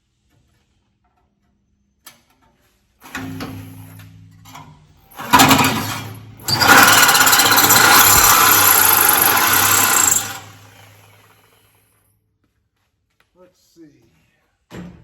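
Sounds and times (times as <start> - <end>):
reciprocating saw cutting metal: 5.2 - 11.6.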